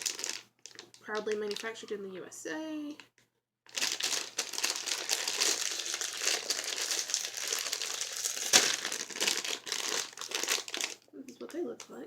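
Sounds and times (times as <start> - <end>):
plastic bag snapping: 0.0 - 1.6, 3.7 - 11.0
plastic bag rustling and crackling: 0.0 - 1.9, 3.7 - 12.0.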